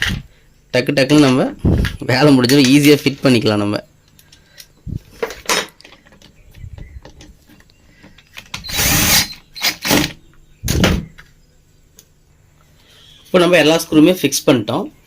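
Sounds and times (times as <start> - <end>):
power screwdriver running: 8.6 - 10.1.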